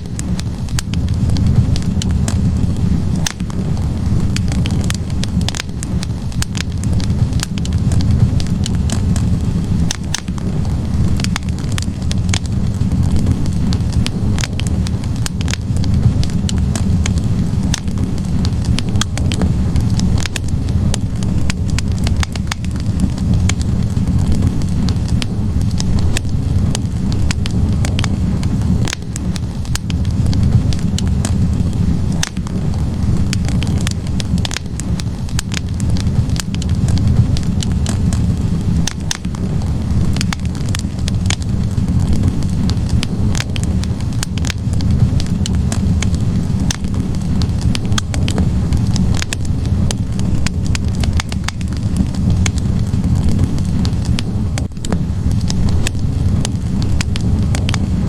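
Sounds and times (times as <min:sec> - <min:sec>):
logs crackling and popping: 0:00.0 - 0:58.0
wood fire burning: 0:00.0 - 0:58.0.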